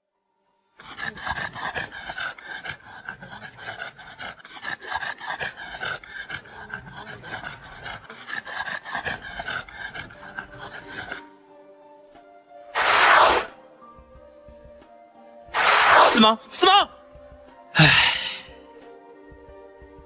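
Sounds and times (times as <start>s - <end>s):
dog panting: 0.8s - 11.2s.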